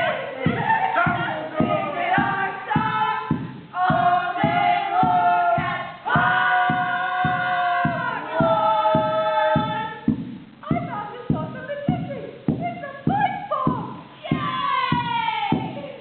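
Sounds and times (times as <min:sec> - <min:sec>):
group singing held notes: 0:00.0 - 0:10.2
steady thumping beat: 0:00.0 - 0:16.0.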